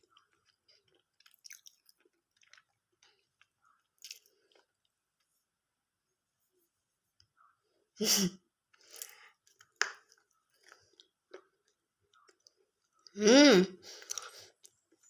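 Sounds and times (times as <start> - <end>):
crunching chewing: 0.0 - 5.3, 8.7 - 13.2, 13.9 - 15.0.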